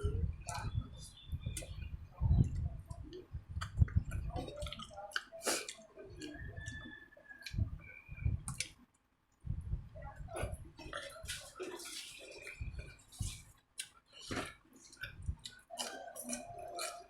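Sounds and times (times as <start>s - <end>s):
wet chewing: 10.8s - 17.0s
lip smacks and mouth clicks: 13.8s - 14.0s.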